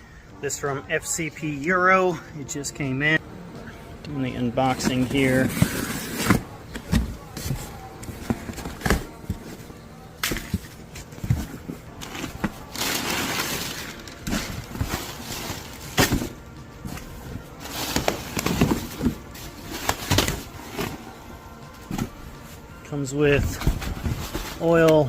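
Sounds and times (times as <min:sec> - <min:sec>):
packaging rustling and crinkling: 0:04.8 - 0:21.1, 0:23.4 - 0:25.0.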